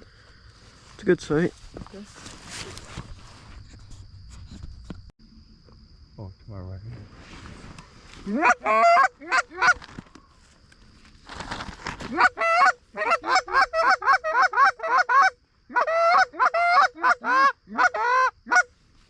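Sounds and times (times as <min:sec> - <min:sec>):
brief rustle: 0:01.5 - 0:05.1, 0:09.7 - 0:12.2
goose honking: 0:08.3 - 0:09.8.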